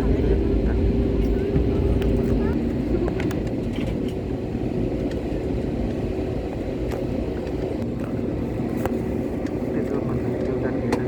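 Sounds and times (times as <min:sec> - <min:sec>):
airliner engine rumble: 0:00.0 - 0:11.0.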